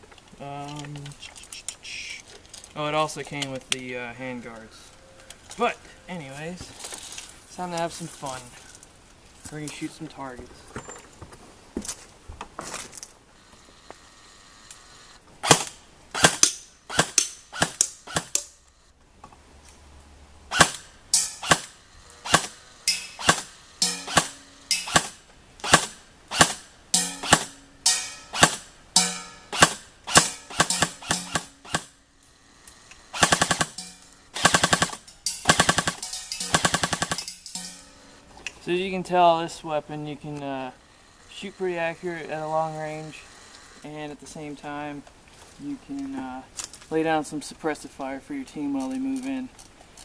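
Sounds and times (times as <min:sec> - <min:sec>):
airsoft rifle full-auto bursts: 0:15.4 - 0:18.6, 0:20.5 - 0:27.6, 0:28.3 - 0:28.7, 0:29.5 - 0:32.0, 0:33.0 - 0:37.4
airsoft rifle shots: 0:15.4 - 0:18.6, 0:20.5 - 0:32.0, 0:33.1 - 0:38.0.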